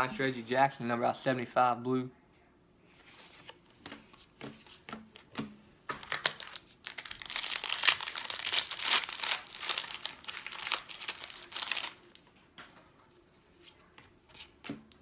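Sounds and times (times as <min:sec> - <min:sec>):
foil wrapper crinkling and tearing: 0:06.0 - 0:12.2.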